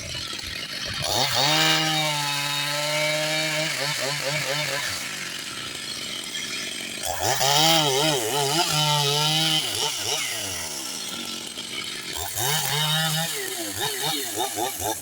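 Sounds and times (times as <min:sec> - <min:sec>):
chainsaw cutting wood: 0:00.0 - 0:15.0.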